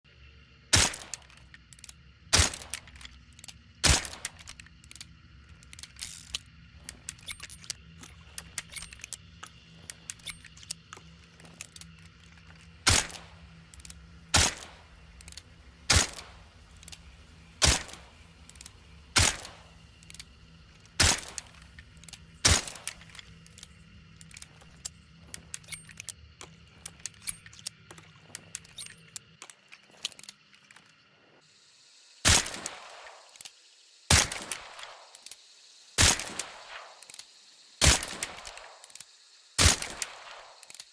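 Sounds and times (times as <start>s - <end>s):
suppressed revolver shots: 0.7s - 3.1s, 3.8s - 5.0s, 12.8s - 20.3s, 20.9s - 26.1s, 32.2s - 33.5s, 34.1s - 35.4s, 36.0s - 37.2s, 37.8s - 39.0s, 39.6s - 40.8s
gun mechanism clicking: 0.8s - 31.0s, 32.3s - 40.9s.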